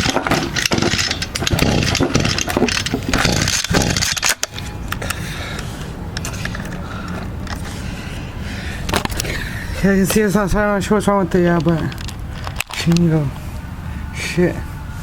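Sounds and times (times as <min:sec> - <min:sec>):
recoil cord rasping: 0:00.0 - 0:05.2
engine turning over: 0:00.0 - 0:13.0.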